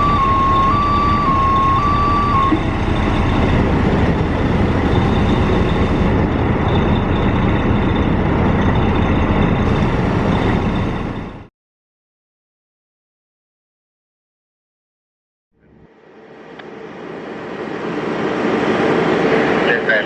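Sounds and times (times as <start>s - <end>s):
fire truck engine rumbling: 0.0s - 11.5s, 15.6s - 20.0s
two-tone siren: 0.0s - 11.5s.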